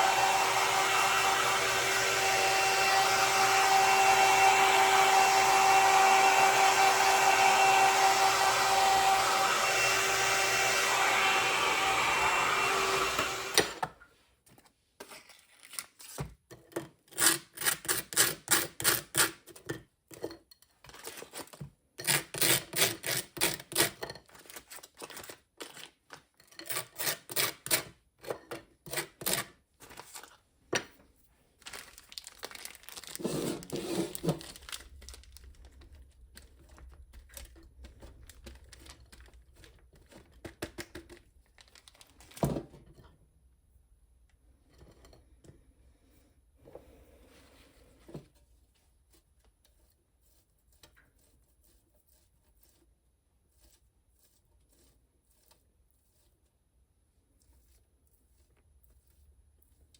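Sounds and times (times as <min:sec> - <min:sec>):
soft handling and rustling: 0:14.0 - 0:16.4, 0:43.8 - 0:59.9.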